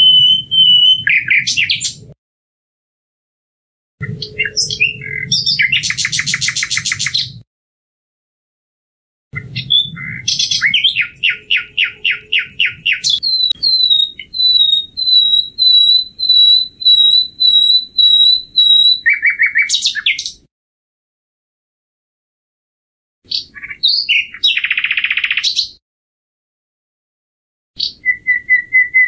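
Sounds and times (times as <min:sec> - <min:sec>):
nightingale singing: 0:00.0 - 0:02.1, 0:04.0 - 0:07.4, 0:09.4 - 0:20.5, 0:23.3 - 0:25.8, 0:27.8 - 0:29.0.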